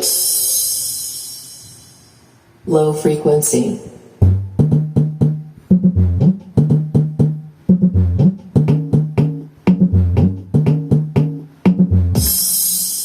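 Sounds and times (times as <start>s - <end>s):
plucked bass notes: 4.2s - 12.4s.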